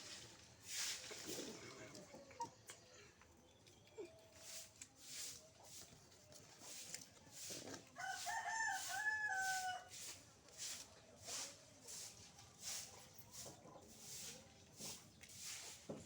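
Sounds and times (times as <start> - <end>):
faint scratchy strokes: 4.4 - 15.9
rooster crowing: 8.0 - 9.9.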